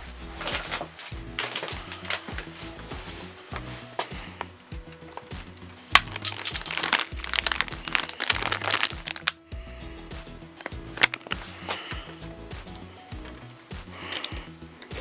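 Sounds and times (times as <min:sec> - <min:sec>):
rattling crinkling noise: 0:00.0 - 0:09.4, 0:10.6 - 0:12.2
background music: 0:00.0 - 0:15.0
clicks and clinks of hand tools: 0:06.0 - 0:09.4.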